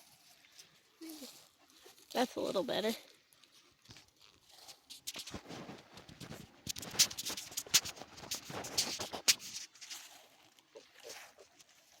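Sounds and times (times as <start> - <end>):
footsteps crunching on ground: 3.6 - 10.3.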